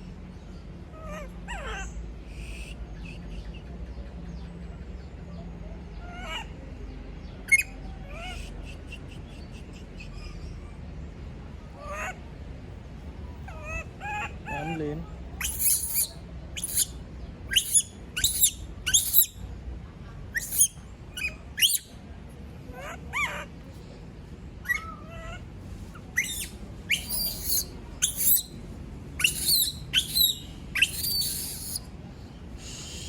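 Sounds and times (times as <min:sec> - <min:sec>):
monkey shrieking: 0:01.0 - 0:02.0, 0:13.5 - 0:14.8, 0:15.4 - 0:16.9, 0:17.5 - 0:19.4, 0:20.3 - 0:21.8, 0:24.6 - 0:25.4, 0:26.0 - 0:28.5, 0:29.2 - 0:31.8.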